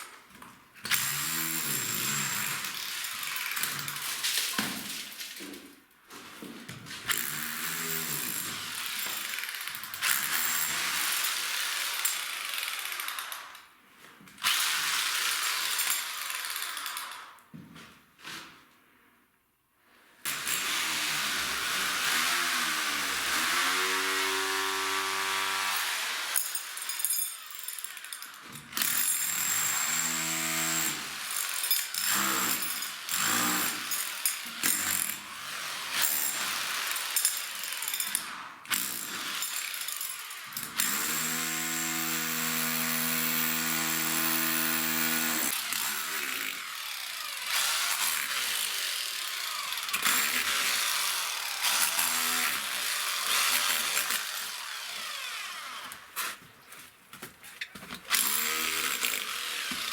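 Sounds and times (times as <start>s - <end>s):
handheld power tool running: 20.3s - 27.0s, 28.8s - 56.2s, 58.0s - 59.9s.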